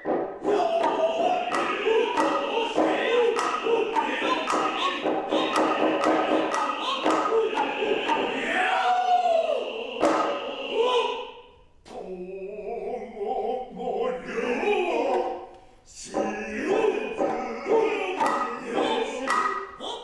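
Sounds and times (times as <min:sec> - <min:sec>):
sharp drum strikes: 0:00.0 - 0:08.8, 0:10.0 - 0:10.6, 0:16.1 - 0:19.8
men chanting long held notes: 0:00.4 - 0:20.0.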